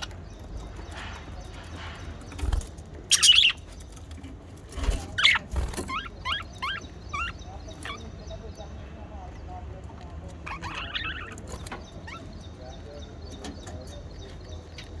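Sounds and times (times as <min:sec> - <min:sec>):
budgerigar chirping: 0:03.1 - 0:03.8, 0:05.2 - 0:08.8, 0:10.3 - 0:15.0.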